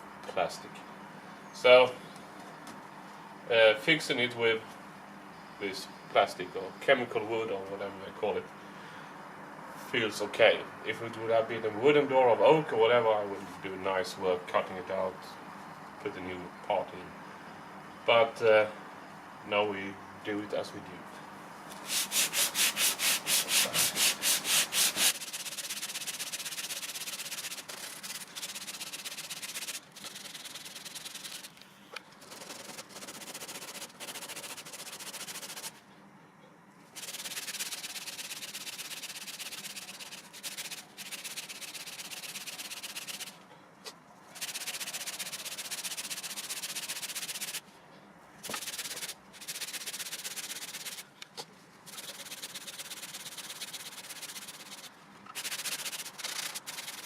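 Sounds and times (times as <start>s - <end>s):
sandpaper rasping: 21.8s - 31.6s, 32.2s - 35.8s, 37.0s - 43.4s, 44.4s - 47.6s, 48.4s - 51.1s, 51.9s - 57.0s.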